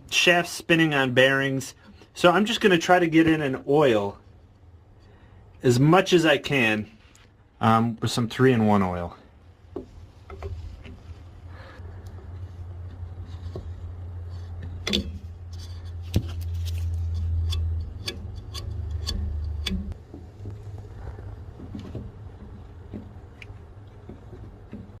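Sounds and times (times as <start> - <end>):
blower motor low hum: 9.3 - 25.0.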